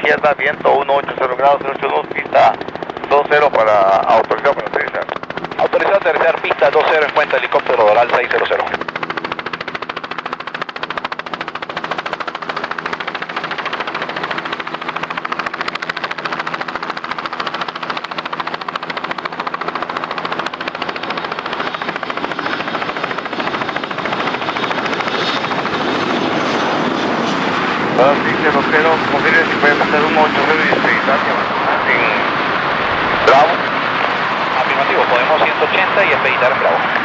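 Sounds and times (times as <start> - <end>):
aircraft engine noise: 0.0 - 37.0
helicopter rotor chopping: 0.0 - 37.0.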